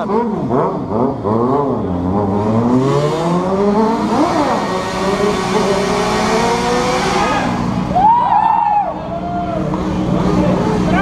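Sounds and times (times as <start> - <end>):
motorcycle engine revving: 0.0 - 8.0.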